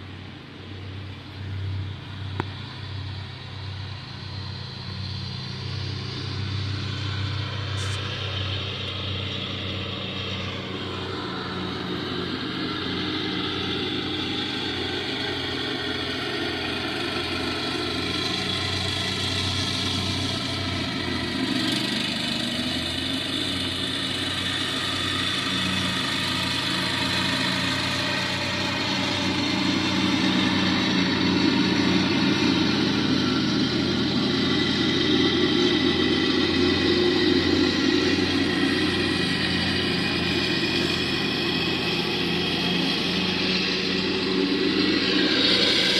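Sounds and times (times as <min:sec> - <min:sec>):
lawn mower engine running: 0:00.0 - 0:45.9.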